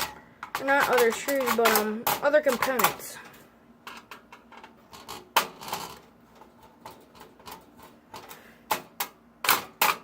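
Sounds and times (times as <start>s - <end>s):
clicks and taps of small parts: 0.0s - 3.0s.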